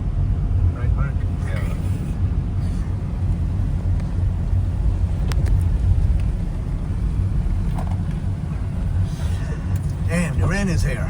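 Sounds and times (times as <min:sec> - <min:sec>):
car road and engine rumble: 0:00.0 - 0:11.0.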